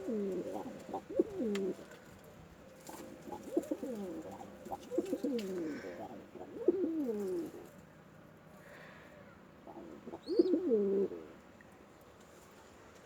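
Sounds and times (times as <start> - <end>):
pigeons cooing: 0.0 - 1.9, 2.9 - 7.7, 9.7 - 11.4.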